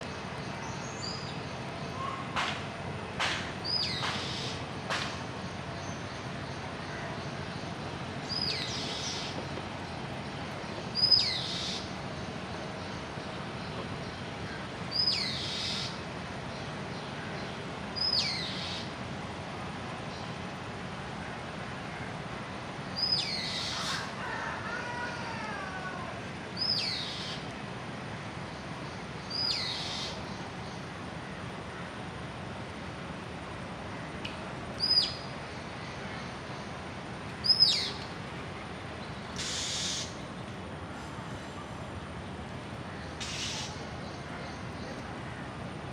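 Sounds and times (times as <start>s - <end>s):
outdoor background hiss: 0.0s - 45.9s
bird whistling call: 37.4s - 38.0s, 39.4s - 40.2s.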